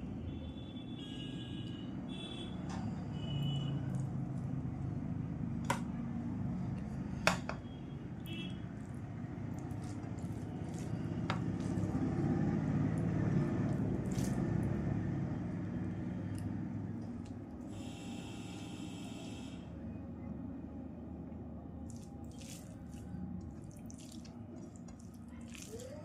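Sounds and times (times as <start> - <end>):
chewing food: 8.8 - 12.1.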